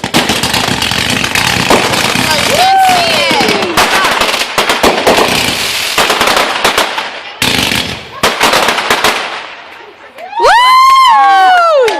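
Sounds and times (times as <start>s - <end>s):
fireworks bangs and crackling: 0.0s - 10.4s.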